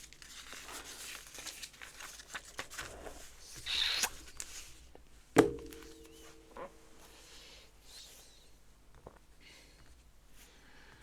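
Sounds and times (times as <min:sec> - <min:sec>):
sharp knock with ringing tone: 0:05.4 - 0:06.6.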